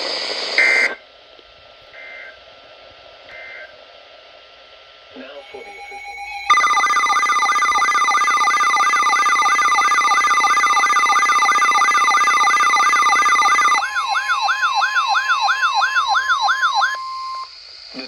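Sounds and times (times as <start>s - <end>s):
steady high alert tone: 5.3s - 17.5s
warbling electronic siren: 5.4s - 17.5s.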